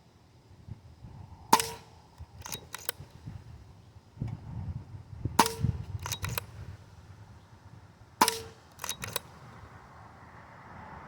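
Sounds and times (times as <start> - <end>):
air rifle shot crack: 1.5 - 3.0, 5.4 - 6.6, 8.2 - 9.3
quick clicks of air rifle: 1.6 - 3.2, 5.4 - 6.6, 8.2 - 9.4.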